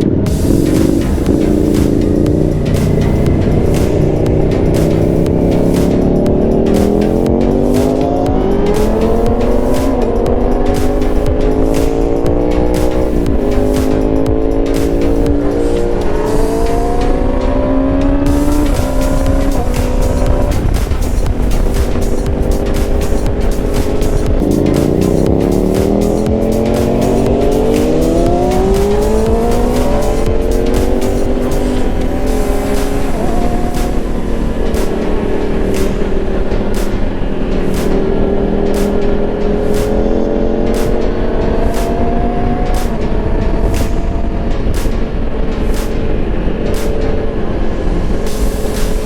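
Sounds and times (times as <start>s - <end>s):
motorcycle engine accelerating: 0.0s - 49.0s
wind rumble: 0.0s - 49.0s.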